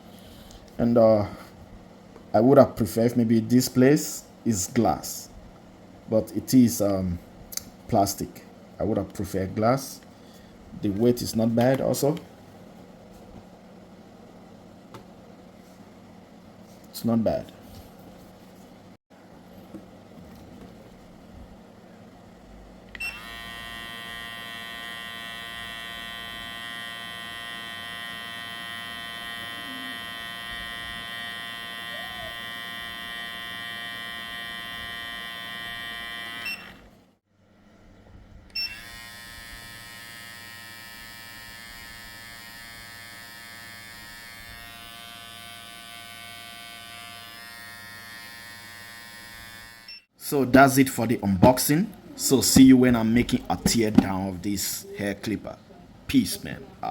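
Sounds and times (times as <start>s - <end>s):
hair clipper motor whine: 22.9s - 36.9s, 38.5s - 50.1s.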